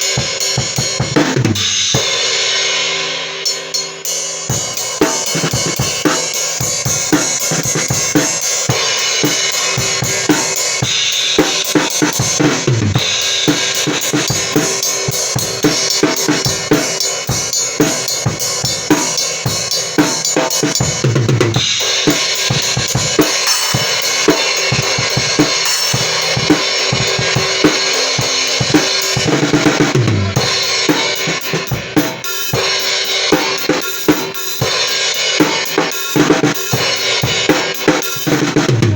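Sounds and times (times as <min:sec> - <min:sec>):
kick and snare drum beat: 0:00.0 - 0:02.4, 0:04.4 - 0:38.9.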